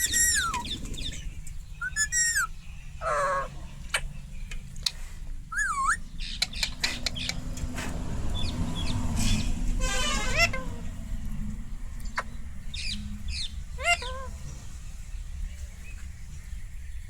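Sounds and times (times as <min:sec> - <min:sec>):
parrot rattling trilled call: 0:00.0 - 0:01.2, 0:01.8 - 0:03.5
parrot wavy whistle: 0:05.5 - 0:06.0.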